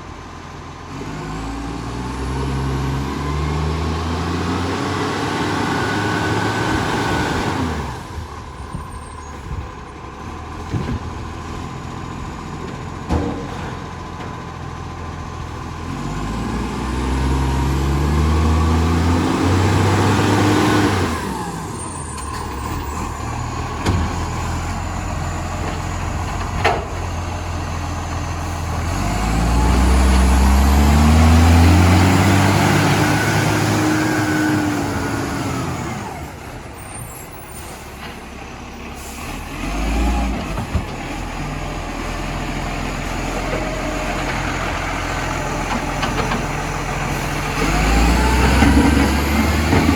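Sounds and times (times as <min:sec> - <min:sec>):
diesel truck engine revving: 0:00.3 - 0:49.9.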